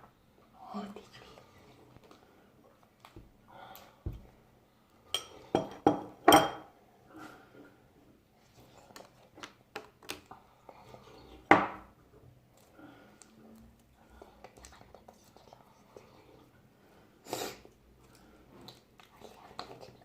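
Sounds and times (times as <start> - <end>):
dishes and utensils clinking: 5.1 - 6.7.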